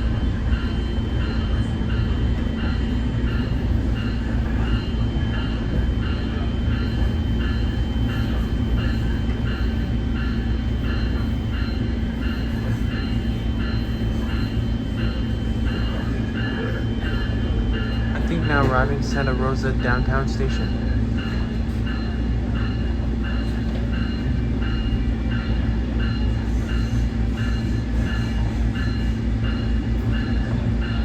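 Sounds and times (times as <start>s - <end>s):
train bell ringing: 0.0s - 31.0s
train low rumble: 0.0s - 31.0s.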